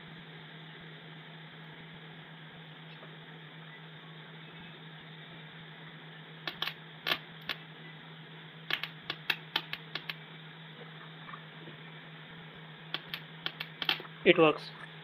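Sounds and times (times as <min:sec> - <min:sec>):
steady low hum: 0:00.0 - 0:15.0
sharp irregular clicks and taps: 0:06.5 - 0:07.6, 0:08.7 - 0:10.2, 0:12.9 - 0:14.1.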